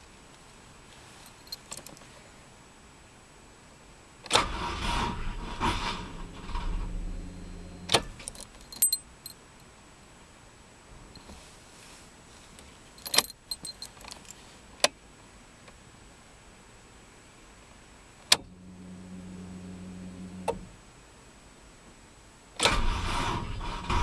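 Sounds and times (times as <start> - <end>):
keys jingling: 1.2 - 2.0, 8.0 - 9.4, 13.0 - 14.4
starter cranking engine weakly: 4.3 - 8.2, 22.7 - 24.0.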